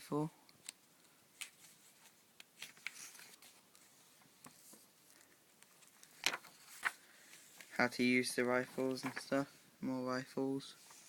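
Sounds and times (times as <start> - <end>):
book pages rustling: 0.6 - 7.8, 8.6 - 9.5.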